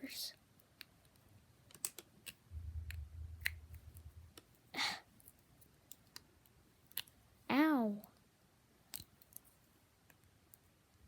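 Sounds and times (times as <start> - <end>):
low handling rumble: 2.5 - 4.4.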